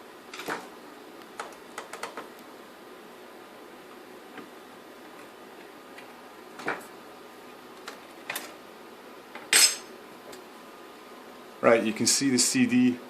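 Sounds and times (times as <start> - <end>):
metal parts clinking on worktop: 9.5 - 9.9.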